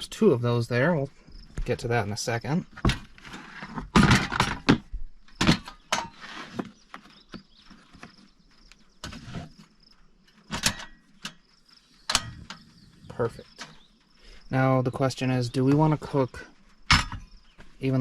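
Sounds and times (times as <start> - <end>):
insects chirping: 0.0 - 18.0
cooking gear clattering: 10.5 - 13.9.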